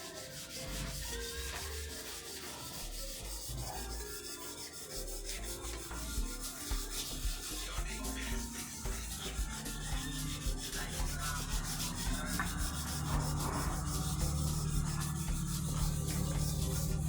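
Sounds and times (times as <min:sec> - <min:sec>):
sandpaper scrubbing steel panels: 0:00.0 - 0:17.0.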